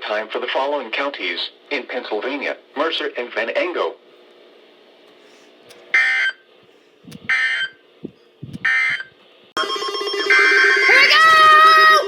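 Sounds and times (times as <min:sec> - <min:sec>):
electronic buzzing tone: 0:06.0 - 0:06.4, 0:07.2 - 0:07.8, 0:08.6 - 0:10.9.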